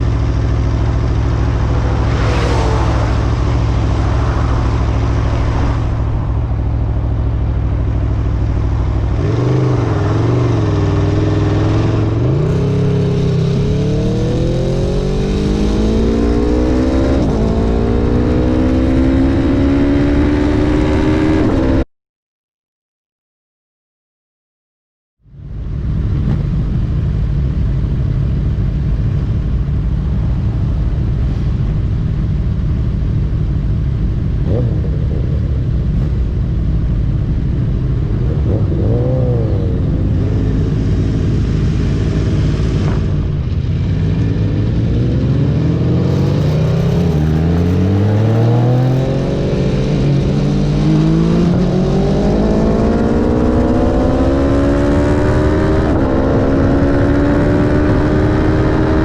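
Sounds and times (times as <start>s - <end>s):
motorcycle engine accelerating: 0.0s - 21.8s, 25.3s - 59.0s
wind rush: 0.7s - 14.7s.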